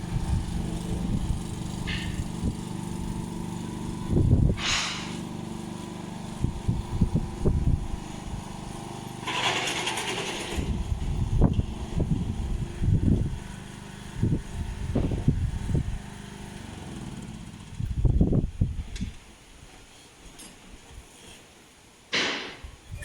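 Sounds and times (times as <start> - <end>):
lawn mower engine running: 0.0 - 19.2
short hissing noises: 4.6 - 5.3.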